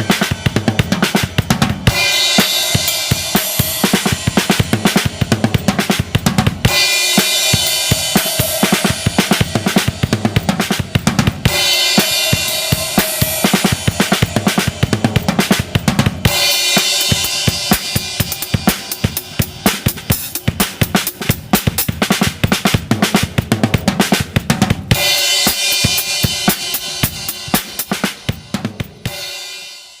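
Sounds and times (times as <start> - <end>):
bass drum and snare strokes: 0.0 - 29.6
ringing cymbals: 6.7 - 20.3.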